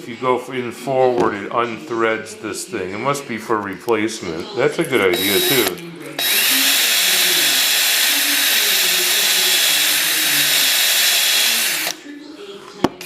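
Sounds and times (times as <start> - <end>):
drill whirring with scraping: 5.1 - 12.0.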